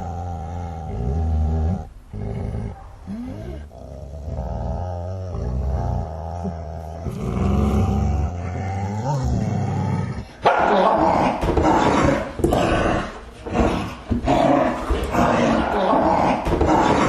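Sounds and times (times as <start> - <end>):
dogs growling: 0.0 - 17.0
dogs barking: 2.7 - 3.2, 10.4 - 12.8.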